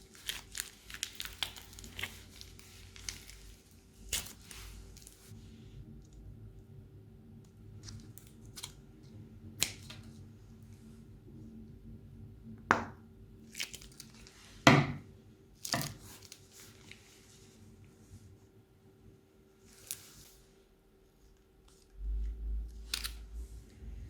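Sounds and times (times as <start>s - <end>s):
plastic bag crinkling: 0.0s - 5.3s.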